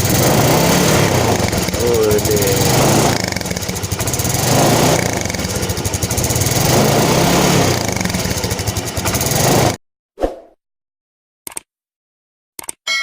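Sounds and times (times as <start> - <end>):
motorcycle engine revving: 0.0 - 9.8.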